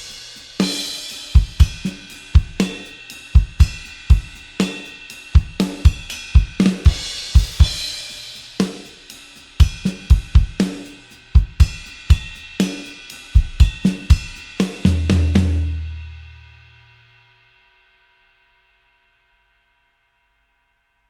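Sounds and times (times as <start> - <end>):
drum kit playing rock beat: 0.0 - 16.8.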